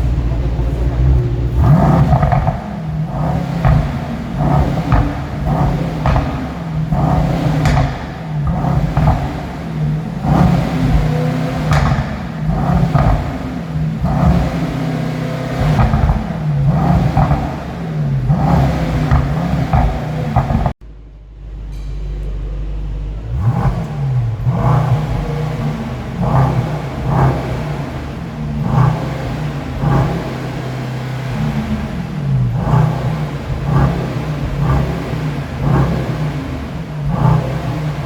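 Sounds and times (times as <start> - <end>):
car engine revving: 0.0 - 20.8, 22.3 - 38.0
exhaust pops and crackles: 0.0 - 20.8.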